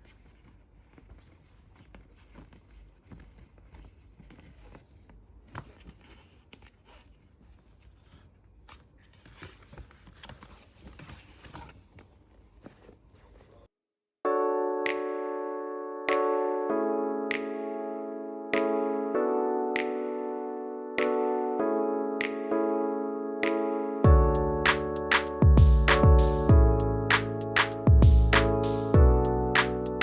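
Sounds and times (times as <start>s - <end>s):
packaging rustling and scraping: 0.0s - 13.7s.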